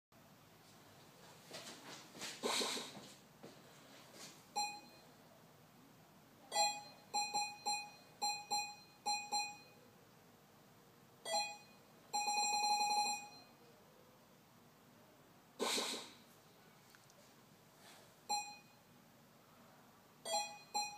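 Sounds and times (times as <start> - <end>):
short electronic beeps: 4.6 - 5.1, 6.6 - 9.8, 18.3 - 18.8.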